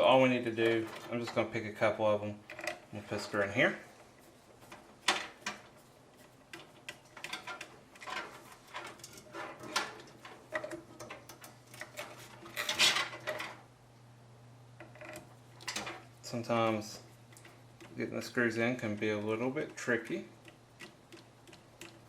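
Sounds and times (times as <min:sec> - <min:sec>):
screwdriver and screws clicking on metal: 0:04.2 - 0:13.5, 0:17.3 - 0:22.0
metal scrape: 0:07.3 - 0:10.7.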